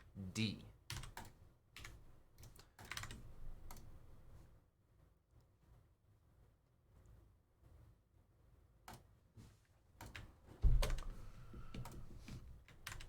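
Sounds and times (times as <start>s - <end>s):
keyboard typing: 0.9s - 4.0s, 10.0s - 13.0s.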